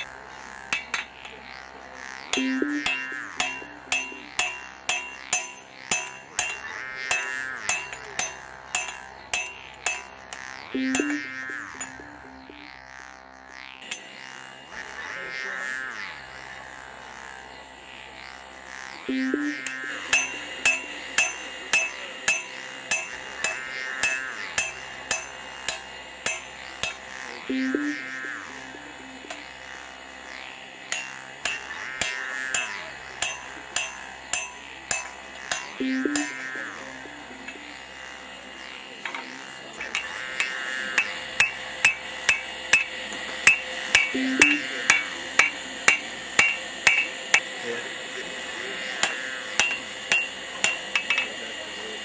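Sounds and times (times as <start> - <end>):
hammer striking hot steel on anvil: 0.0 - 1.6, 2.3 - 12.3, 13.8 - 14.2, 19.1 - 28.1, 29.2 - 29.5, 30.9 - 37.7, 38.9 - 47.7, 48.6 - 51.7.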